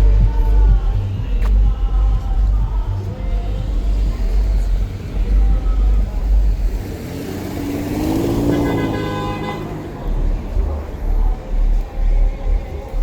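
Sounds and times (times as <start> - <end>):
music with heavy bass beat: 0.0 - 13.0
car passing: 0.5 - 13.0
car horn toot: 7.9 - 10.8.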